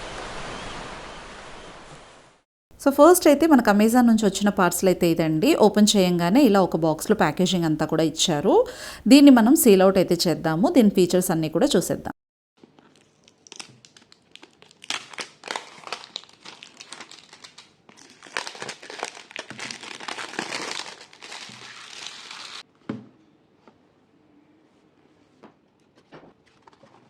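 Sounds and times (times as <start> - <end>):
packaging crinkling and rustling: 12.6 - 22.6, 25.8 - 27.0.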